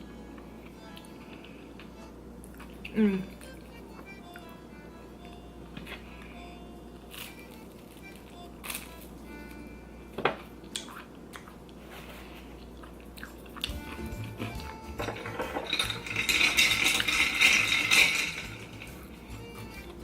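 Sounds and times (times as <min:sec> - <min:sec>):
light background music: 0:00.0 - 0:10.6, 0:13.1 - 0:20.0
chewing mouth sounds: 0:00.9 - 0:04.5, 0:10.6 - 0:11.8, 0:12.5 - 0:14.8
cutlery clinking on plate: 0:14.5 - 0:19.1.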